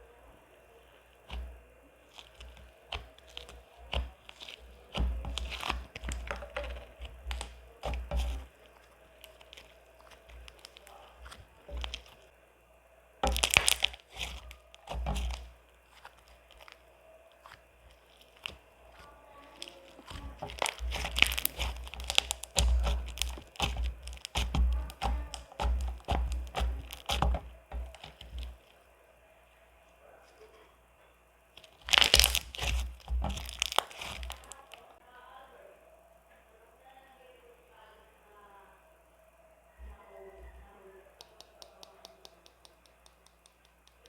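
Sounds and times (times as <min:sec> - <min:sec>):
foam slime crunching: 0:01.2 - 0:12.3, 0:13.2 - 0:28.7, 0:31.6 - 0:34.8.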